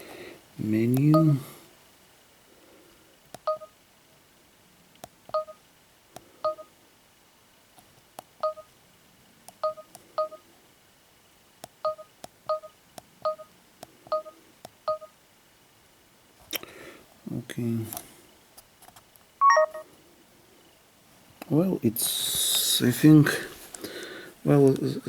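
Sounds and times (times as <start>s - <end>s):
short electronic beeps: 19.4s - 19.8s
small button clicks: 19.4s - 19.8s.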